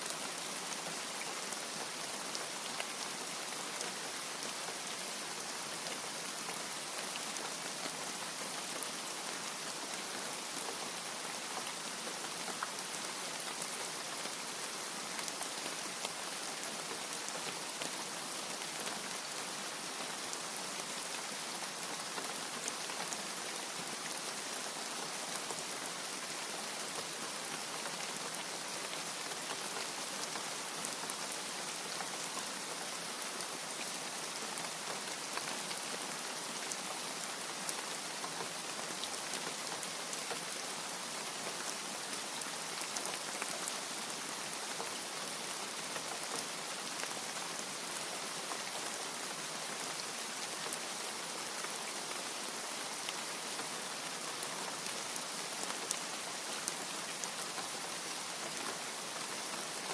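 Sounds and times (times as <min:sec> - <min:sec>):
steady rain hiss: 0:00.0 - 0:59.9.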